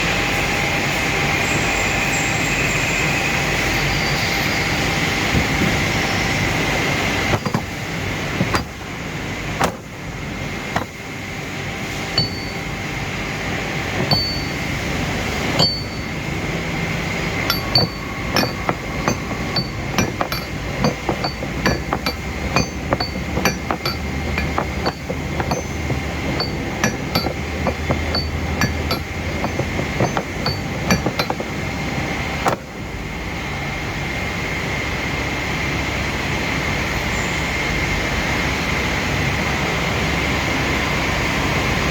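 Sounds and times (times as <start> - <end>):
metallic clicks and clinks: 12.2 - 12.8, 13.9 - 14.8, 15.5 - 16.3, 17.4 - 31.6.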